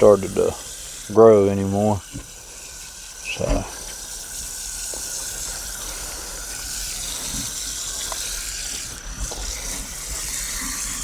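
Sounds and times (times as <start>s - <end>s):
microphone interference hiss: 3.2s - 4.0s.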